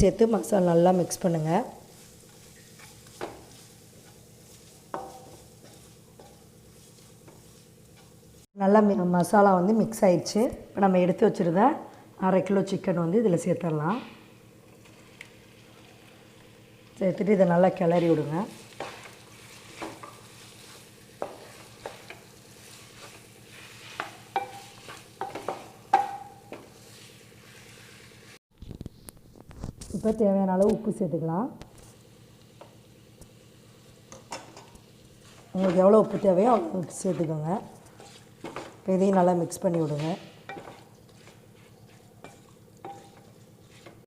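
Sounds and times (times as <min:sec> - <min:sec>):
faint sizzle: 0:00.0 - 0:10.0, 0:11.0 - 0:30.2, 0:31.3 - 0:44.0
spatula stirring: 0:00.1 - 0:08.5, 0:17.7 - 0:28.3, 0:34.1 - 0:44.0
ladle scraping and knocking pan: 0:02.2 - 0:08.2, 0:17.9 - 0:27.0, 0:35.3 - 0:38.8, 0:39.6 - 0:44.0.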